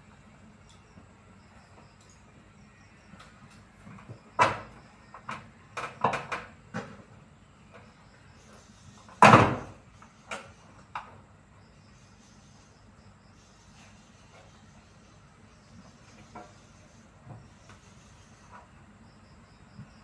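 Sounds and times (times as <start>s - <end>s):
knocks and clunks from washing machine: 9.2s - 9.8s.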